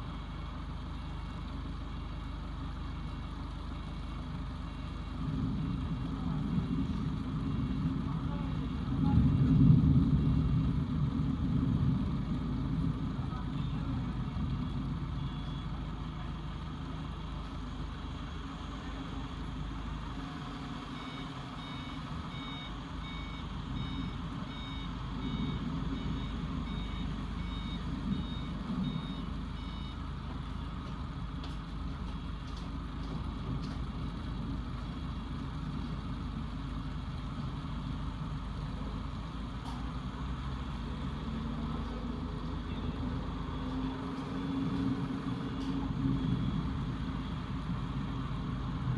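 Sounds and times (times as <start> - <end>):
street traffic: 0.0 - 48.9
rain: 0.1 - 48.9
vehicle reversing alarm beeping: 12.0 - 19.6, 20.2 - 34.4, 40.4 - 48.8.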